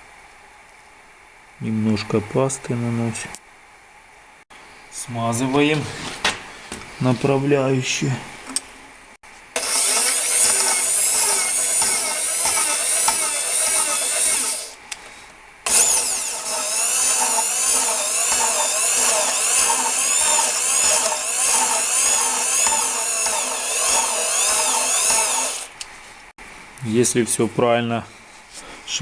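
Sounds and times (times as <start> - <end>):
electric drill whining: 9.6 - 14.8, 15.7 - 25.8.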